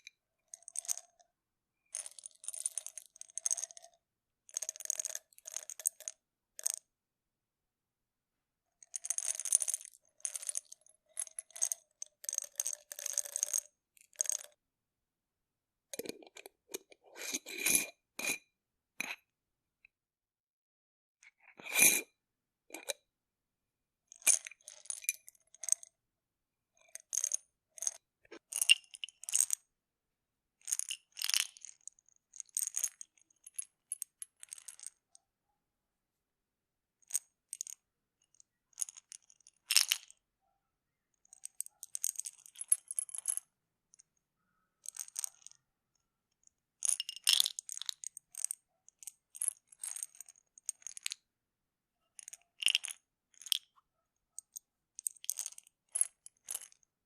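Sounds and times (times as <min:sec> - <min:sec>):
pills rattling in a pill bottle: 0:00.5 - 0:01.2, 0:01.9 - 0:03.9, 0:04.5 - 0:06.8, 0:08.9 - 0:14.5, 0:24.1 - 0:25.9, 0:26.9 - 0:29.6, 0:30.6 - 0:35.0, 0:37.1 - 0:40.2, 0:41.3 - 0:43.4, 0:44.8 - 0:45.6, 0:46.8 - 0:51.2, 0:52.2 - 0:53.7, 0:54.4 - 0:56.8.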